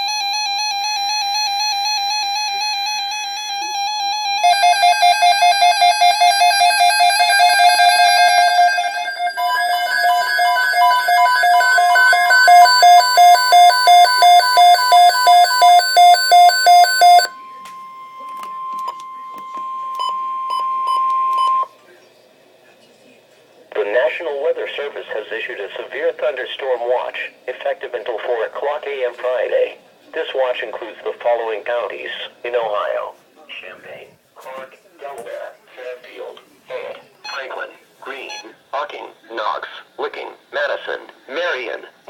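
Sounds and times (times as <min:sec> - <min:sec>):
pulsing electronic alarm tones: 0:00.0 - 0:21.7
steady alert tone: 0:04.4 - 0:21.7.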